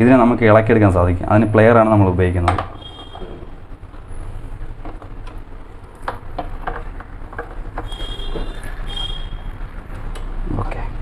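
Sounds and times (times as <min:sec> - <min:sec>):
high squeak: 0:02.8 - 0:03.6, 0:07.8 - 0:09.6.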